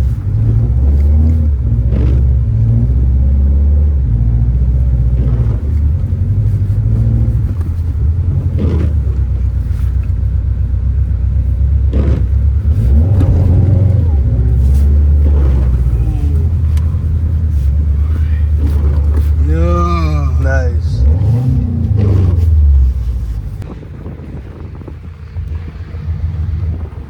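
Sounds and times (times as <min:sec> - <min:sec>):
car engine rumbling: 0:00.0 - 0:27.0.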